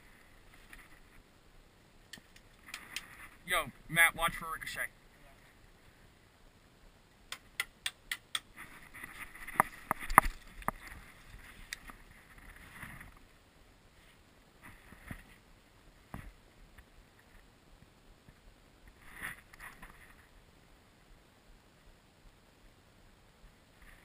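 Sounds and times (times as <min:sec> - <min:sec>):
rustling: 0:00.0 - 0:01.3, 0:02.1 - 0:03.6, 0:08.4 - 0:17.5.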